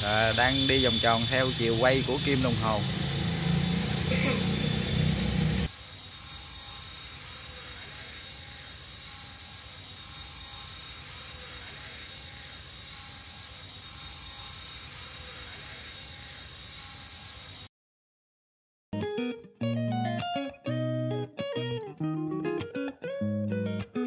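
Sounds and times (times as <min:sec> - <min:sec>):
model helicopter rotor whir: 0:00.0 - 0:17.7.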